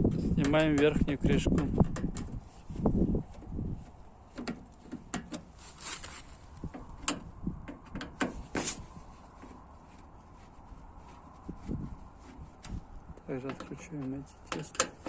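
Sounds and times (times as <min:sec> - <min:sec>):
cover scraping: 0:04.6 - 0:06.8, 0:08.3 - 0:09.6.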